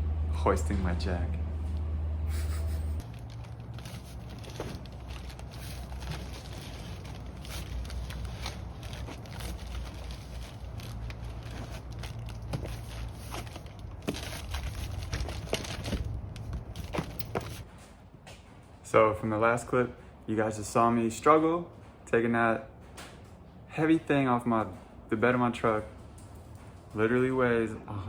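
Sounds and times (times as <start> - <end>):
steady low rumble: 0.0 - 18.0
box scraping and crinkling: 3.0 - 17.7.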